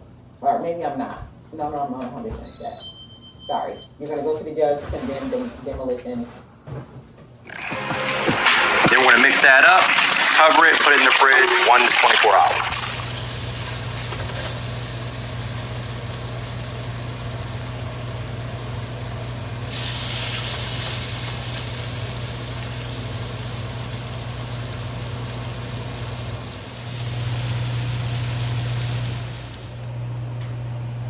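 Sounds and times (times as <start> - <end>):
kitchen appliance motor hum: 12.6 - 31.0.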